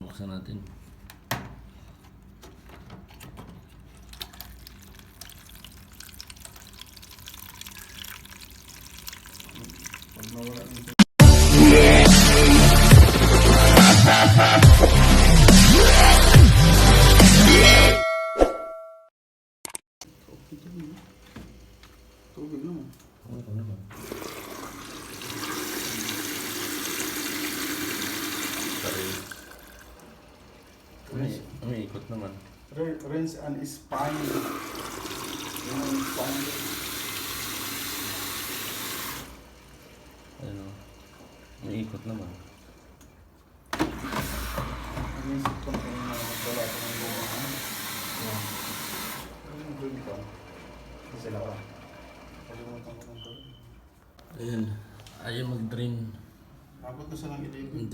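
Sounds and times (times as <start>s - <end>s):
water splashing into washing machine: 3.3s - 11.0s, 23.9s - 32.4s, 34.0s - 39.7s, 43.8s - 50.6s.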